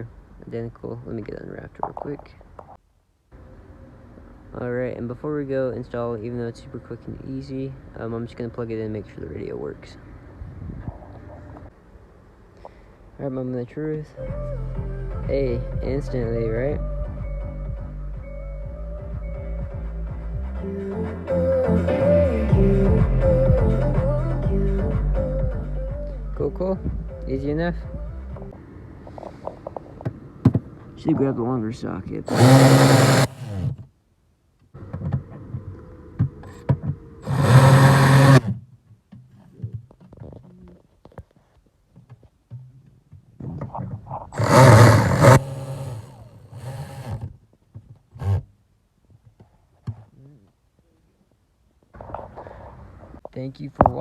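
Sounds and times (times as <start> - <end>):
cordless power tool running: 32.3 - 33.7, 37.2 - 38.5, 44.4 - 47.3, 48.2 - 48.4.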